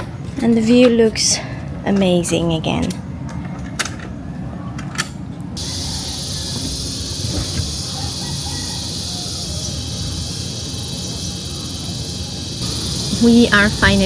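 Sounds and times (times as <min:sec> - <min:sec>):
high-pitched insect chorus: 0:05.6 - 0:14.0.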